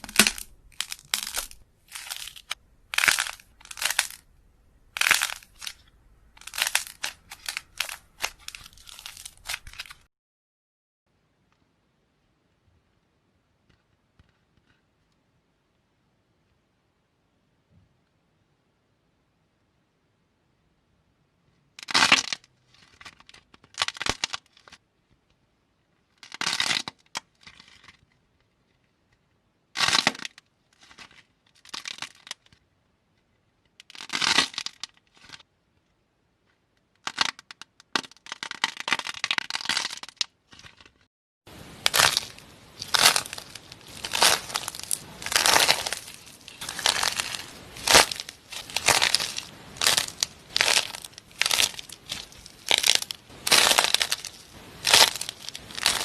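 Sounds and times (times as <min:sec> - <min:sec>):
dried clay crackling by hand: 0:00.0 - 0:10.1, 0:36.5 - 0:56.0.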